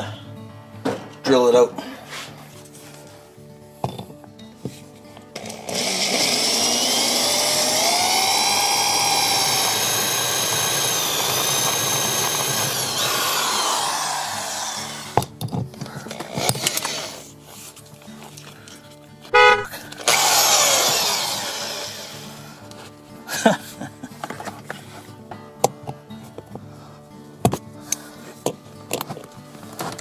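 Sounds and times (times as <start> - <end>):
electric drill whining: 5.4 - 15.3, 16.1 - 17.3, 19.4 - 22.7.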